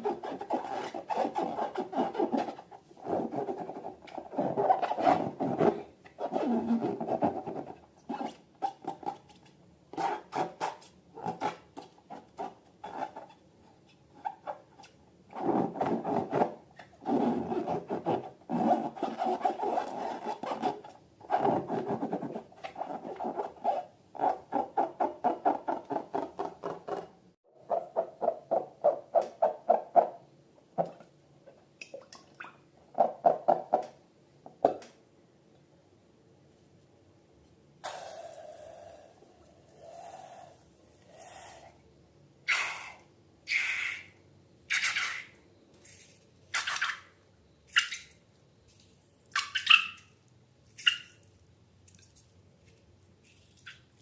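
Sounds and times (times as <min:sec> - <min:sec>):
balloons and slime rubbing: 0:00.0 - 0:09.3.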